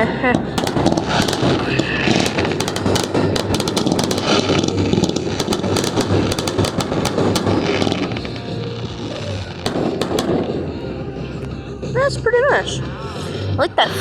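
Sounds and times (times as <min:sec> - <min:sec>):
rumble of bursting shells: 0:00.0 - 0:11.2
fireworks crackling pops: 0:00.3 - 0:10.8.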